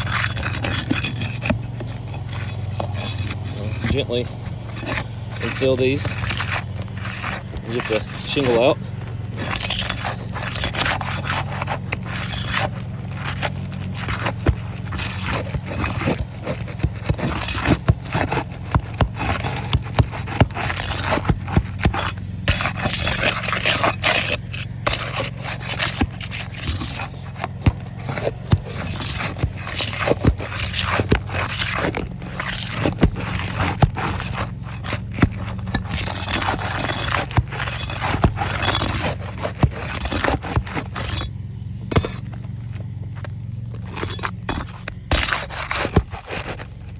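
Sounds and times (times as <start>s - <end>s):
shingles scraping and crackling: 0.0s - 46.9s.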